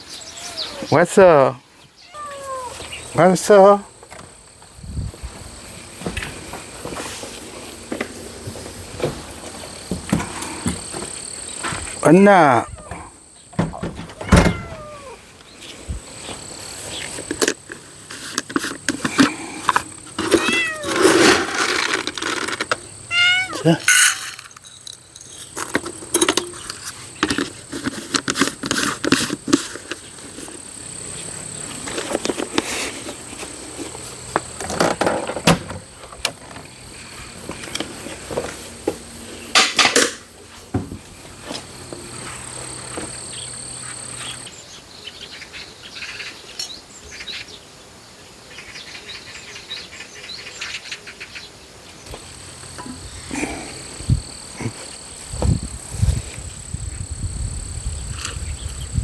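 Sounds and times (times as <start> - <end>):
insects trilling: 0.0 - 59.0
close clicks and rustles: 15.6 - 22.9.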